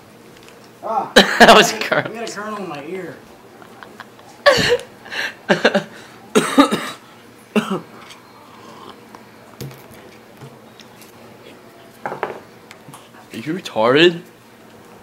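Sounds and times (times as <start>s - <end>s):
man coughing: 4.5s - 4.8s, 6.3s - 7.9s.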